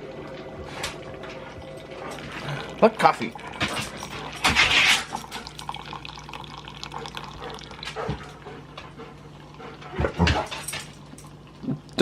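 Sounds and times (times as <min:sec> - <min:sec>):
coffee maker low hum: 0:00.0 - 0:10.2
coffee dripping into pot: 0:01.8 - 0:07.9.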